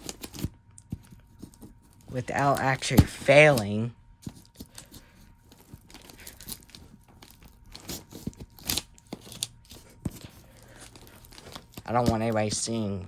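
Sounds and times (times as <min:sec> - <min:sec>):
package wrapping crinkling: 0:00.0 - 0:12.6.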